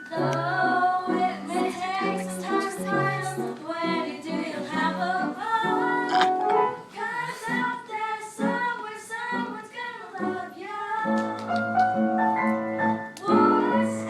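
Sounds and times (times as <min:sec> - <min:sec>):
instrumental accompaniment: 0:00.0 - 0:07.0
voices singing show tune: 0:00.0 - 0:11.3, 0:13.2 - 0:14.0.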